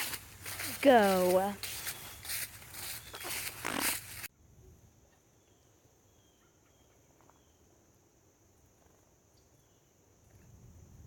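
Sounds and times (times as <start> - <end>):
faint bird chirps: 5.1 - 7.8.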